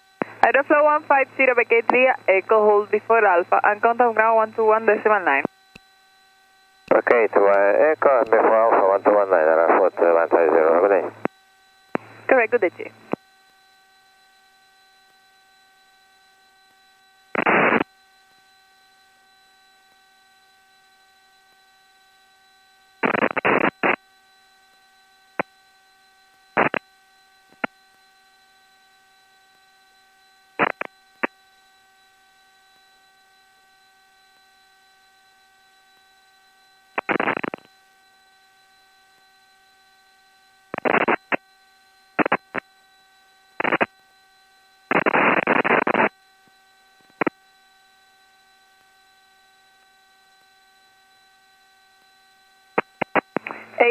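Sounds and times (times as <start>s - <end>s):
electrical hum: 0.0s - 53.9s
radio static bursts: 0.2s - 5.5s, 6.9s - 11.3s, 12.0s - 12.9s, 17.4s - 17.9s, 23.0s - 24.0s, 26.6s - 26.8s, 30.6s - 30.9s, 37.0s - 37.6s, 40.8s - 41.4s, 42.2s - 42.6s, 43.6s - 43.9s, 44.9s - 46.1s, 52.8s - 53.9s.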